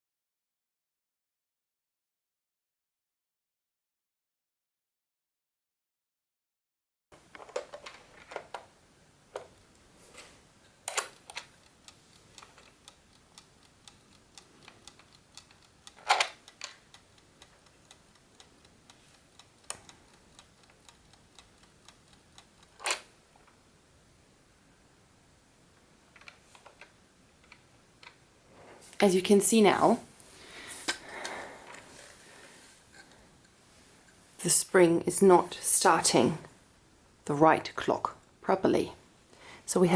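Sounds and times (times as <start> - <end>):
wooden chess clock clicks: 10.9 - 23.6.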